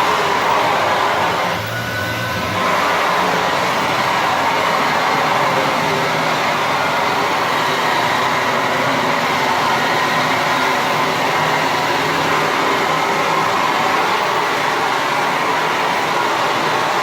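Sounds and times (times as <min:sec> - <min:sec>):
leaf vacuum air rush: 0:00.0 - 0:17.0.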